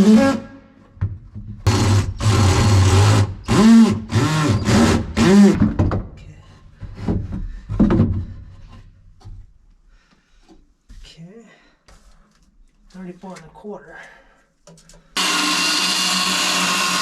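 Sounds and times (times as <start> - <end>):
power drill running: 1.7 - 5.6, 15.2 - 17.0.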